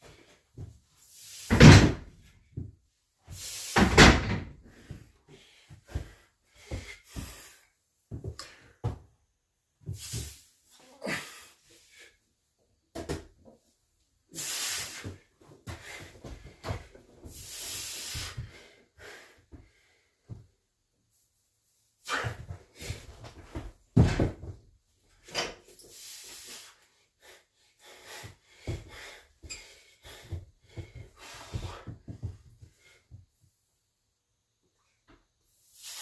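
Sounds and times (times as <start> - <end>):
heavy breathy exhalations: 9.9 - 12.2, 22.0 - 23.1, 25.9 - 33.2.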